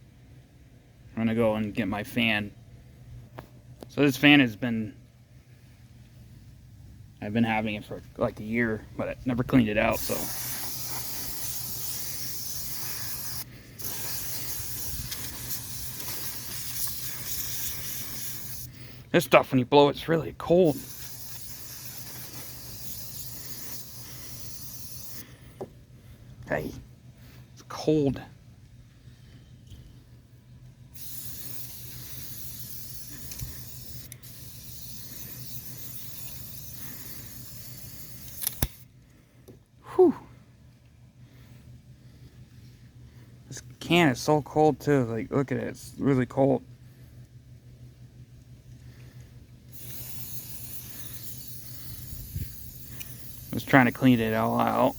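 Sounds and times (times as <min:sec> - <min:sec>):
compressed air duster spraying: 0:09.9 - 0:18.8, 0:20.6 - 0:25.2, 0:31.0 - 0:38.8, 0:49.7 - 0:54.9
sharp clicks: 0:38.2 - 0:38.8.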